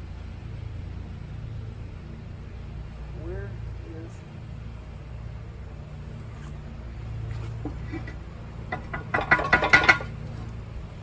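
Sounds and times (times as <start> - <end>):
steady low hum: 0.0 - 11.0
hand rubbing inside rubber tire: 6.2 - 8.5.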